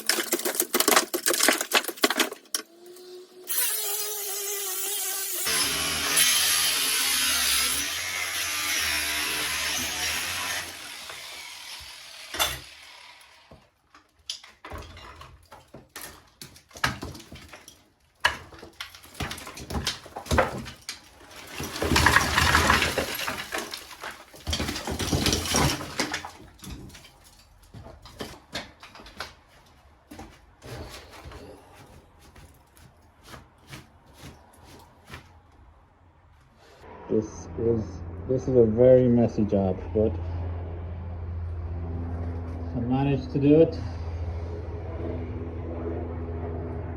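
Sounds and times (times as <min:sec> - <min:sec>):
power tool cutting ceiling: 0:02.7 - 0:13.6.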